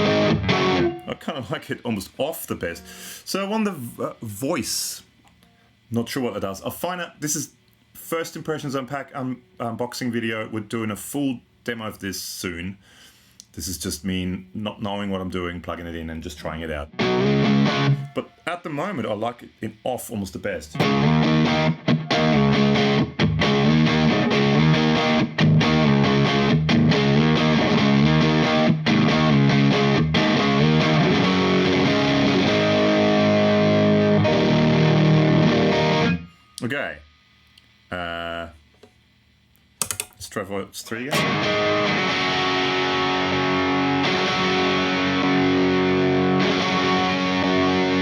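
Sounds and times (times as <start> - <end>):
overdriven electric guitar chords: 0.0 - 1.2, 16.9 - 18.3, 20.8 - 36.4, 41.1 - 48.0.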